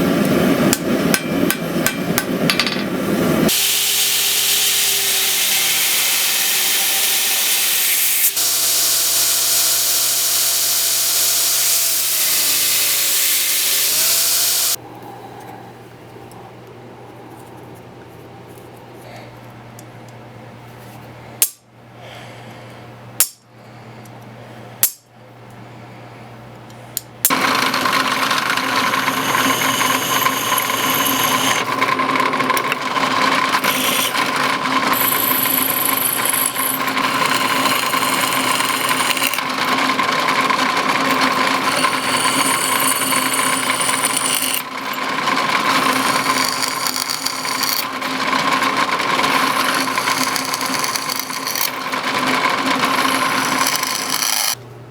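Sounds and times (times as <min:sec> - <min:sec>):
power tool grinding: 0:03.5 - 0:14.8, 0:27.3 - 0:54.6.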